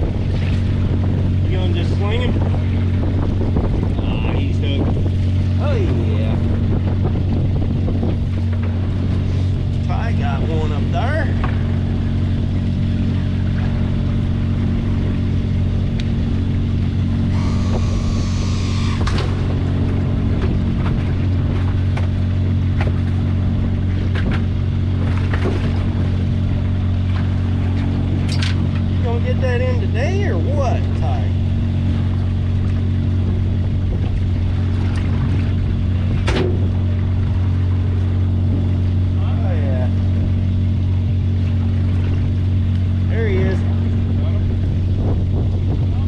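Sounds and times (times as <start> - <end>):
boat engine humming: 0.0 - 46.0
brief high whine: 17.3 - 19.4.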